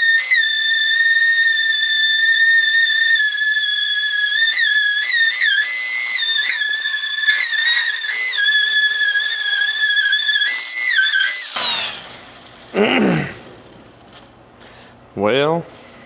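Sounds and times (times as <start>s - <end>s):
angle grinder grinding steel: 0.0s - 12.4s.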